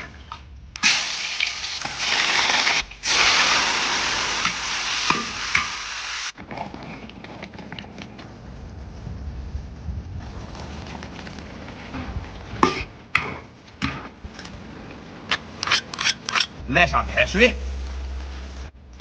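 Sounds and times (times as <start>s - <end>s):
water hissing in a pot: 0.8s - 6.4s.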